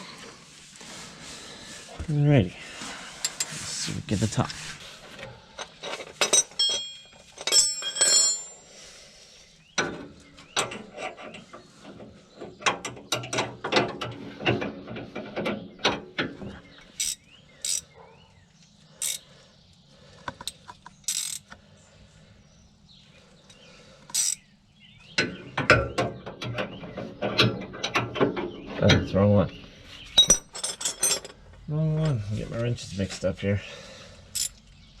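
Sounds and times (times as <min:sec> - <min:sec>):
ringing metal clinks: 0:06.2 - 0:08.6, 0:30.2 - 0:31.4
wrench ratcheting clicks: 0:17.0 - 0:17.8, 0:19.0 - 0:19.2, 0:21.0 - 0:21.5, 0:24.1 - 0:24.4.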